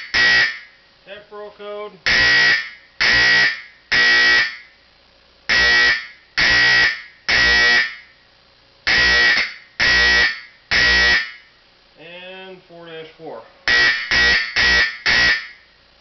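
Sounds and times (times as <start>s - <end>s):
fire alarm horn buzzing blasts: 0.0s - 0.7s, 2.0s - 4.7s, 5.5s - 8.1s, 8.8s - 11.5s, 13.7s - 15.7s.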